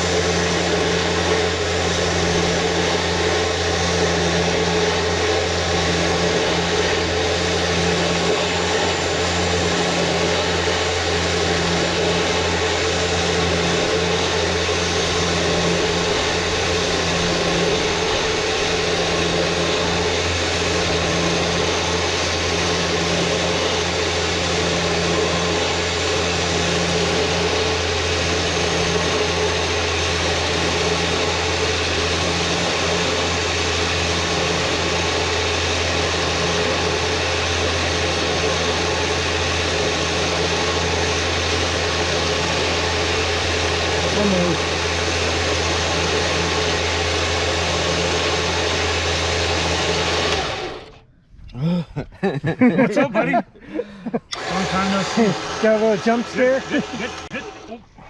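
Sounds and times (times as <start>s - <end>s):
electric winch running: 0.0s - 51.1s, 52.7s - 57.8s.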